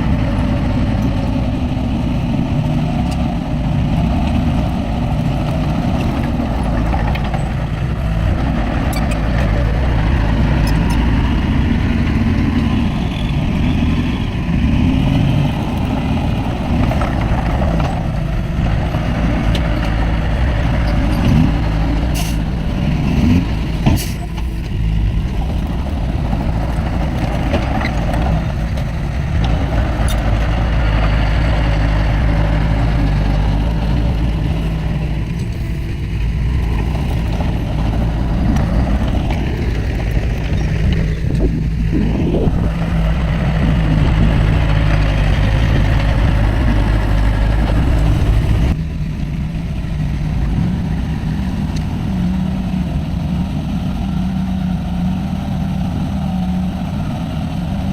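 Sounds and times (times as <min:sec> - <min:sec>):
diesel machinery engine rumble: 0:00.0 - 0:57.9.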